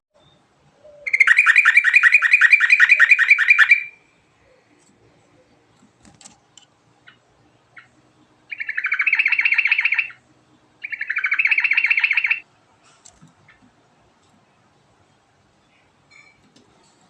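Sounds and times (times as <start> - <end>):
bird trilling song: 0.1 - 4.6, 7.0 - 10.2, 10.8 - 12.4.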